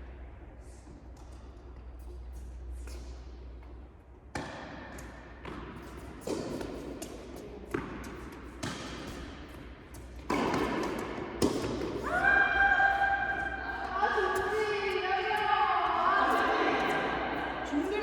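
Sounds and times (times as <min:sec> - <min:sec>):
tennis ball struck by rackets: 0:04.3 - 0:12.0.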